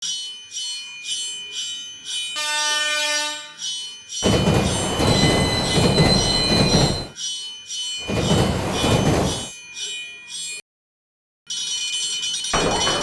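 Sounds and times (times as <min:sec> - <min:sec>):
railroad crossing bell ringing: 0:02.1 - 0:07.2
train horn: 0:02.4 - 0:03.6
train passing rushing noise: 0:04.2 - 0:07.2, 0:08.0 - 0:09.5.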